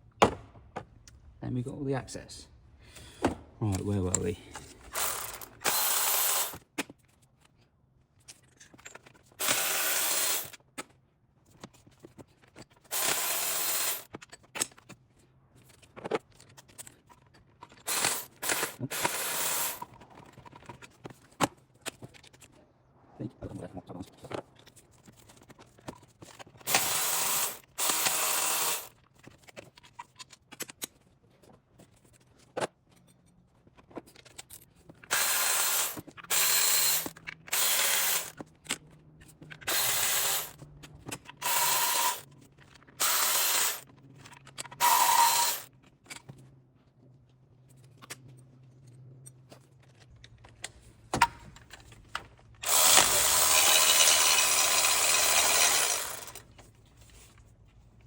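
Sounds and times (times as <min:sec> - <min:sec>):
power tool spinning bolts: 0:04.1 - 0:06.6, 0:09.4 - 0:10.6, 0:12.9 - 0:14.1, 0:17.9 - 0:19.9, 0:26.7 - 0:29.0, 0:35.1 - 0:38.4, 0:39.6 - 0:40.6, 0:41.3 - 0:42.3, 0:43.0 - 0:43.9, 0:44.8 - 0:45.7, 0:52.6 - 0:56.5.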